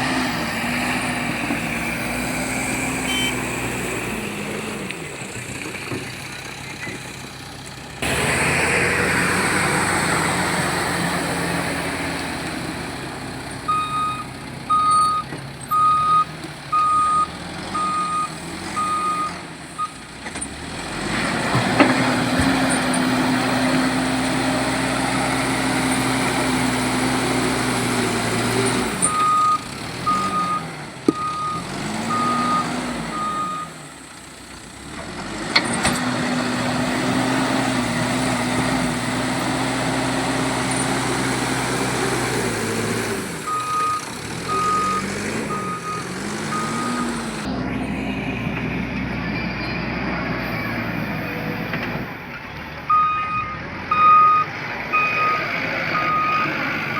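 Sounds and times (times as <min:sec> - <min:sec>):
diesel engines working: 0:00.0 - 0:56.9
reversing alarm beeping: 0:03.0 - 0:03.5, 0:13.7 - 0:20.0, 0:29.0 - 0:33.8, 0:43.5 - 0:47.4, 0:52.9 - 0:56.9.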